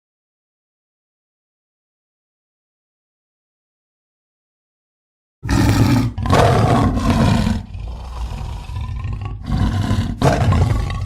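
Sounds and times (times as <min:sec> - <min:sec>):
tiger roaring: 0:05.4 - 0:11.0
low rumbling growl: 0:05.5 - 0:11.0.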